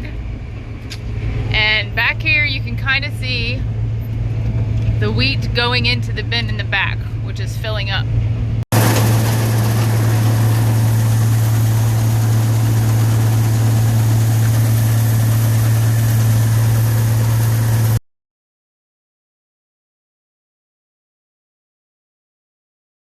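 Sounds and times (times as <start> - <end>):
combine harvester engine drone: 0.0 - 18.0.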